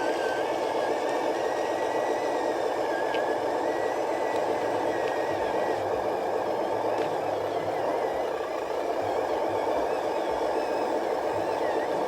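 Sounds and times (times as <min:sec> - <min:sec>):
electric motor whirring with whine: 0:00.0 - 0:12.0.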